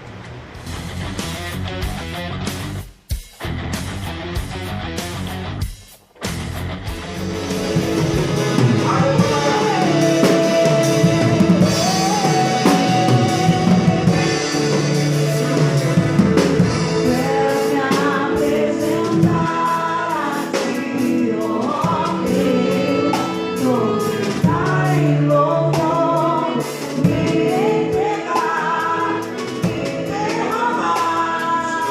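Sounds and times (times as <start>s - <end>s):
live band playing: 0.5s - 31.9s
person singing: 7.8s - 31.9s.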